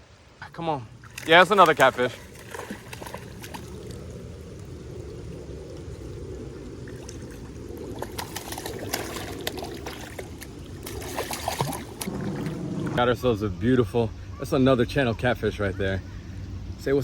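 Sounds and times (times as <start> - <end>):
water sloshing and trickling: 0.6 - 13.0
water splashes: 0.8 - 13.0.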